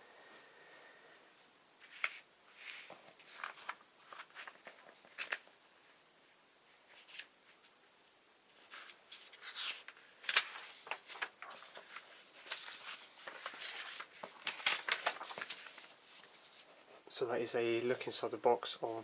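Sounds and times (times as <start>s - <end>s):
paper and cardboard rustling: 1.8s - 5.5s, 6.8s - 7.8s, 8.5s - 17.0s.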